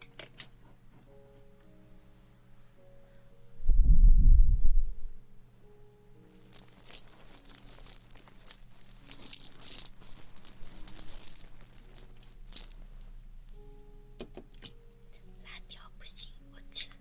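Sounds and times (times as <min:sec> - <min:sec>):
faint steady background tones: 0:00.0 - 0:17.0
close-up crinkling and rustling: 0:06.3 - 0:13.6.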